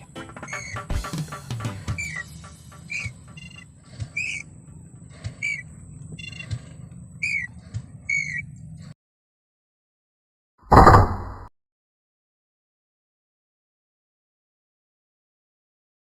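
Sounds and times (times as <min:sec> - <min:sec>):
buzzy rattling bird notes: 0:00.0 - 0:06.5
bird call notes: 0:00.0 - 0:08.6
low hum: 0:02.0 - 0:09.0.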